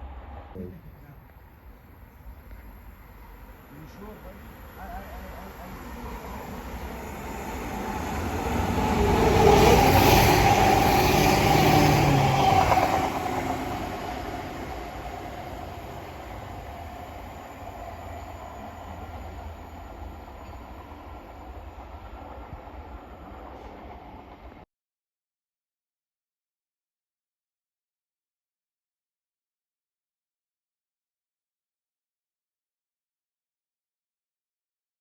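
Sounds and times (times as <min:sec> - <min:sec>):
train passing: 0:00.0 - 0:24.6.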